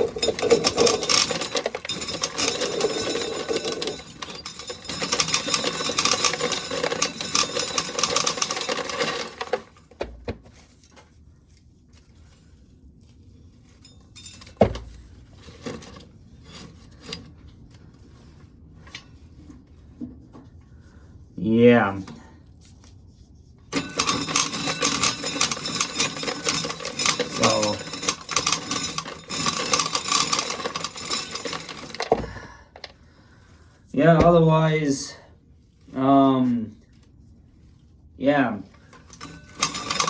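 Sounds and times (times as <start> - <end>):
corn sheller grinding rattle: 0.0 - 10.2, 14.2 - 17.2, 23.7 - 33.0, 38.7 - 40.0.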